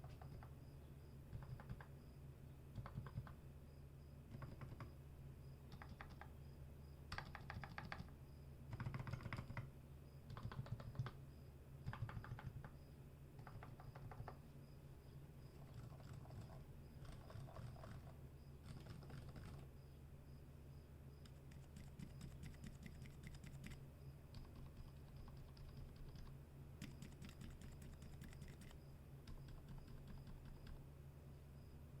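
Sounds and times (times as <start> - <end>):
damped keyboard keystrokes: 0.0 - 0.6, 1.3 - 1.9, 2.8 - 3.4, 4.3 - 4.9, 5.7 - 6.4, 7.1 - 9.7, 10.3 - 11.2, 11.8 - 12.8, 13.4 - 14.4, 15.6 - 19.7, 21.2 - 30.8.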